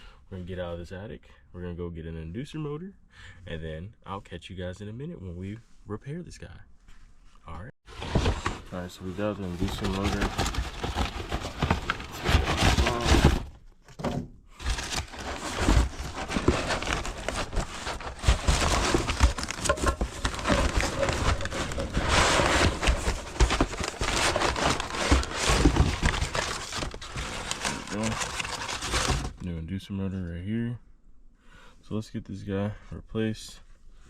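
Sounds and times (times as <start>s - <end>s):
packaging crinkling and rustling: 7.9s - 13.6s, 14.6s - 29.4s.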